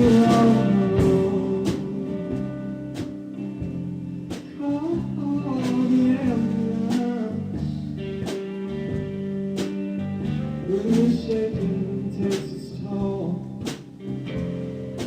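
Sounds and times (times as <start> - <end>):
person singing: 0.0 - 3.2, 4.4 - 8.5, 10.5 - 14.0
slow guitar-led song: 0.0 - 15.0.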